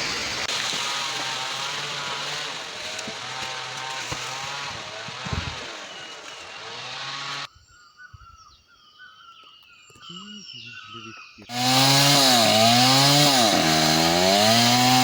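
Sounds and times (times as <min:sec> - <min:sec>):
chainsaw engine revving: 0:00.0 - 0:07.5, 0:11.5 - 0:15.0.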